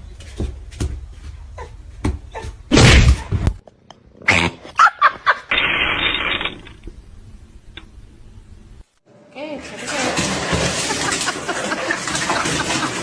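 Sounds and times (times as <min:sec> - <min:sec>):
loud sudden noises: 0:02.7 - 0:03.6.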